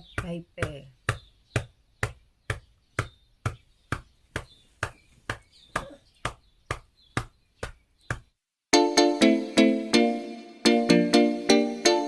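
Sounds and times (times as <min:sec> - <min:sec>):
hand slapping a back: 0:00.0 - 0:08.4.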